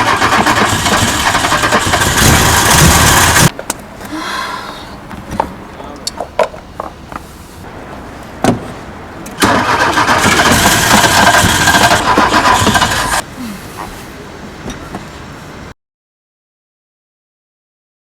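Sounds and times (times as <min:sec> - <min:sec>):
car engine cranking: 0:00.0 - 0:03.8, 0:09.2 - 0:13.9.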